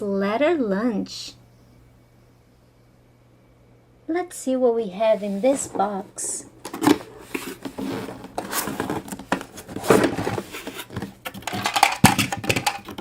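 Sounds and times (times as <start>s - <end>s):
rustling: 6.7s - 12.0s
cardboard box being opened: 6.8s - 11.2s
hard plastic clicks and clatters: 10.9s - 13.0s.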